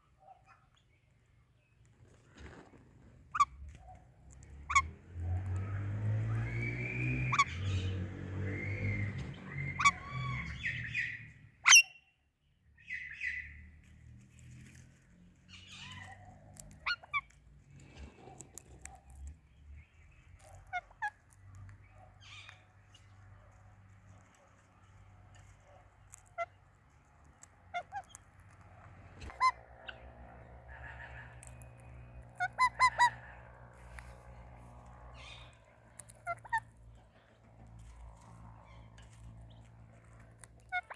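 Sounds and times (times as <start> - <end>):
soft bird chirps: 0.0 - 26.8
parakeets screeching: 3.3 - 11.9, 15.5 - 17.4, 19.8 - 23.3, 27.7 - 37.2, 37.8 - 40.9
parakeets warbling chatter: 4.3 - 5.0, 7.3 - 11.8, 27.8 - 37.2, 37.8 - 40.9.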